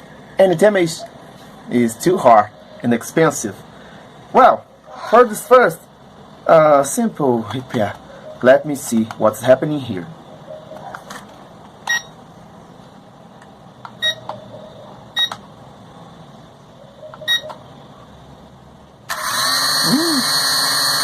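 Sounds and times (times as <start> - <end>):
short electronic beeps: 10.4 - 10.9, 11.9 - 12.2, 14.0 - 15.4, 16.8 - 17.6
drone rotor motors whining: 19.1 - 21.0.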